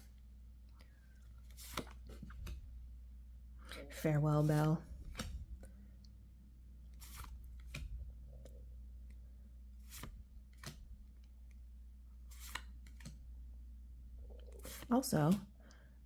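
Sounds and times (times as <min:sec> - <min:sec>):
low steady hum: 0:00.0 - 0:12.3, 0:13.1 - 0:16.0
cards snapping and swishing: 0:01.5 - 0:02.6, 0:05.0 - 0:05.4, 0:07.0 - 0:08.0, 0:09.8 - 0:10.8, 0:12.3 - 0:13.2.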